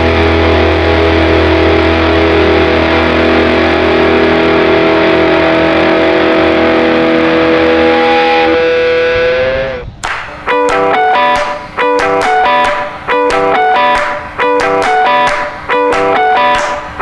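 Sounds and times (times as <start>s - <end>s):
distorted electric guitar chord: 0.0s - 17.0s.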